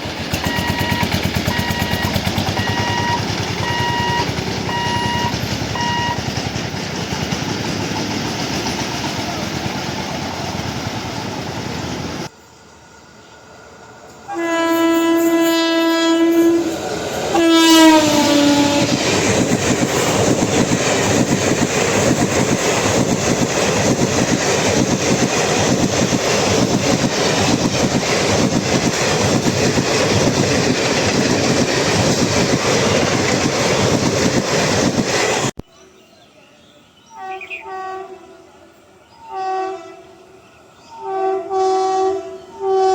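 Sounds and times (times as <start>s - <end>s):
train wheels clattering on rails: 0.0s - 12.3s, 16.6s - 35.6s
train horn blasts: 0.4s - 6.2s, 14.2s - 19.1s, 37.1s - 42.9s.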